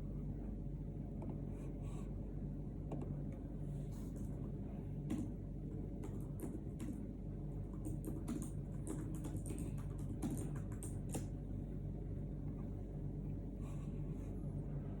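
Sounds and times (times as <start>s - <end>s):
steady low hum: 0.0s - 15.0s
quick irregular clicks: 7.7s - 11.4s.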